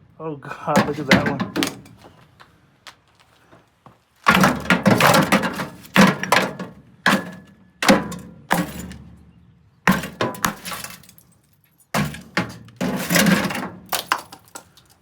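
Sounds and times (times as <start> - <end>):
light bulbs cracking and popping: 12.0 - 15.0.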